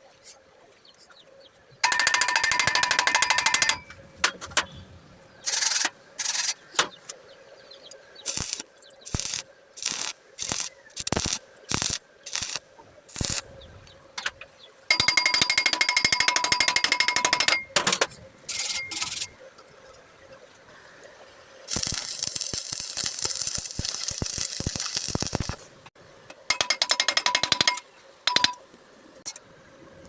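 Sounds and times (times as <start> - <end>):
welding arc crackling: 8.2 - 13.5, 18.5 - 19.3, 21.7 - 25.9.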